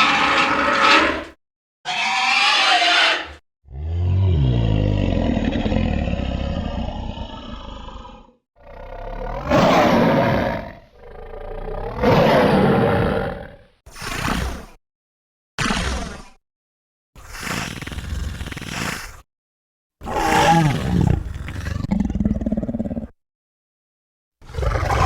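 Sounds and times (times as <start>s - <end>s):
dinosaur roars: 0.0s - 1.3s, 1.9s - 13.7s, 20.0s - 23.1s, 24.4s - 25.0s.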